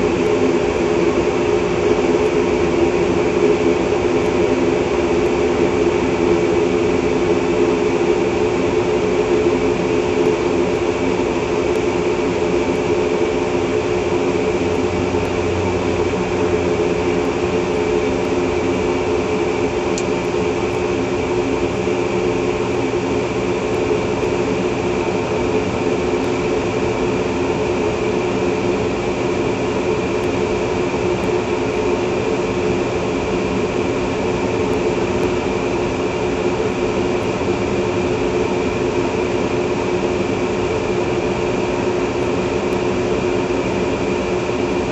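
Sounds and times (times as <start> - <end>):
furnace burner and blower droning: 0.0 - 44.9.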